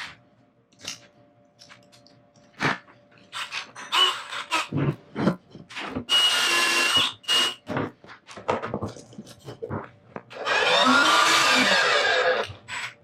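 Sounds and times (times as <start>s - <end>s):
power tool whine: 6.0s - 7.6s, 10.3s - 12.9s.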